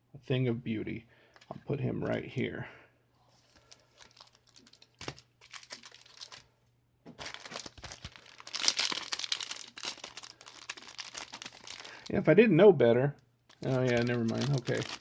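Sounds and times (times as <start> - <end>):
foil wrapper crinkling: 3.3 - 6.5, 7.2 - 12.2, 13.5 - 15.0
wrapper clicks and rustles: 7.2 - 12.1, 13.5 - 15.0.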